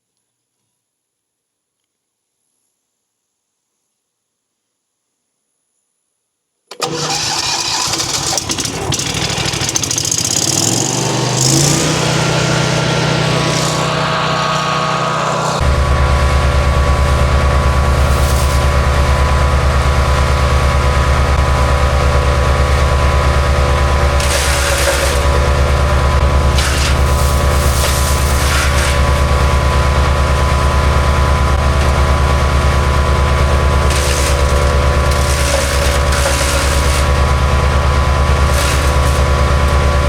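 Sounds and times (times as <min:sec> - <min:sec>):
wood chipper engine running: 0:06.7 - 0:40.0
deep loud drone: 0:09.4 - 0:40.0.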